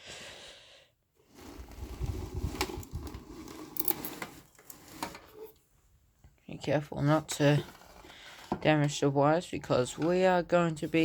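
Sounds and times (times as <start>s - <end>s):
rustling and low bumps: 1.6s - 3.4s.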